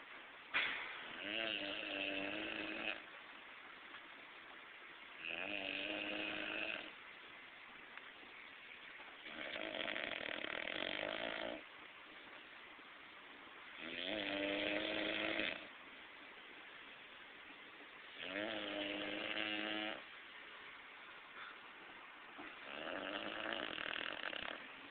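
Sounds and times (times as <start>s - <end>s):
person snoring loudly: 1.1s - 3.0s, 5.2s - 6.9s, 9.3s - 11.6s, 13.8s - 15.7s, 18.2s - 20.0s, 22.6s - 24.6s
quiet breathing: 18.1s - 24.9s.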